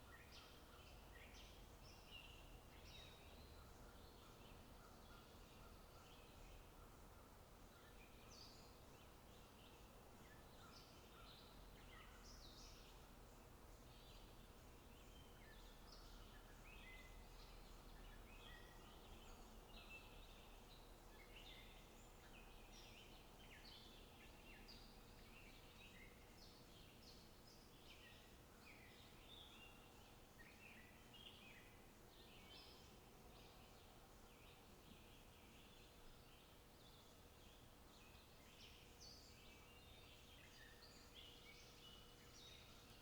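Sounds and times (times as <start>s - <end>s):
steady background hiss: 0.0s - 43.0s.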